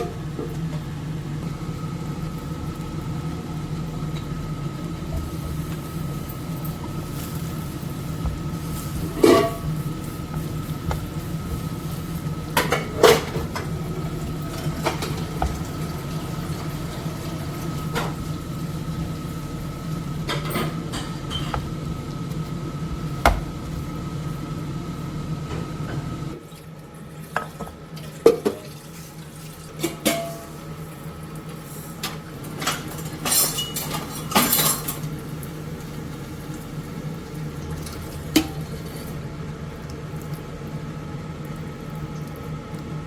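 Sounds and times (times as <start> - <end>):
steady low hum: 0.0 - 26.4.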